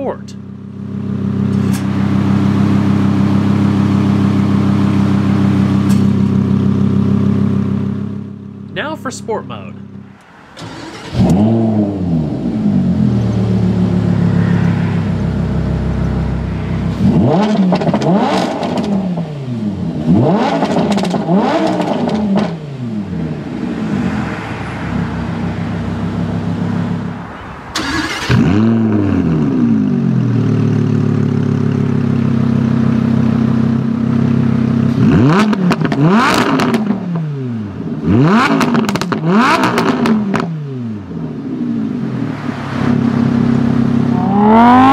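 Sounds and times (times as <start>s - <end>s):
car engine idling: 0.0s - 20.1s, 20.7s - 34.9s
sports car engine starting: 0.0s - 44.9s
engine rev blips: 42.8s - 44.9s.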